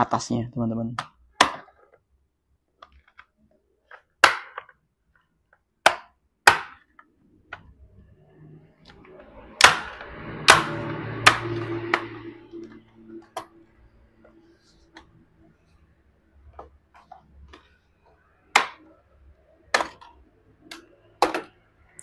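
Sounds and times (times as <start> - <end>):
plastic handling noise: 1.0 - 7.8, 14.2 - 22.0.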